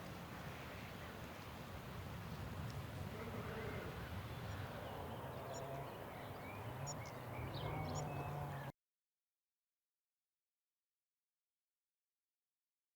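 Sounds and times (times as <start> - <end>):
faint animal calls: 3.1 - 8.7
bird chirps: 4.4 - 8.7.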